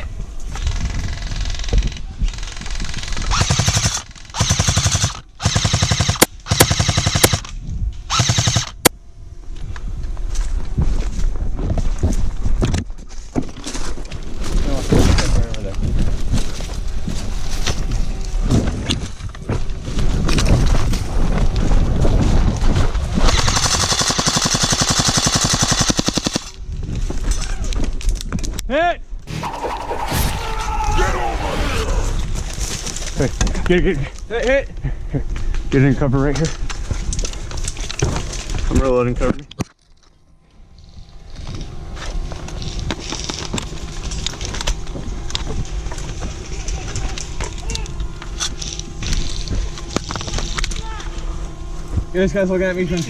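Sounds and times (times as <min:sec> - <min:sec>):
airsoft guns firing bursts: 0:03.4 - 0:07.4, 0:08.1 - 0:08.9, 0:23.3 - 0:26.5.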